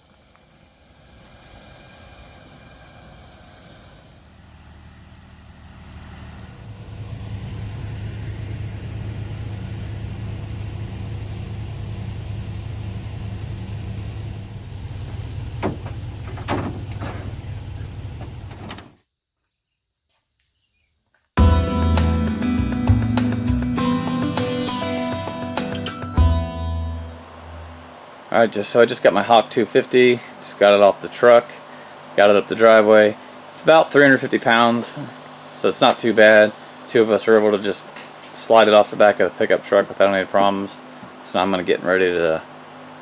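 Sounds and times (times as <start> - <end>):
vehicle engine rumbling: 1.0 - 19.0
sharp knocks: 15.0 - 17.5.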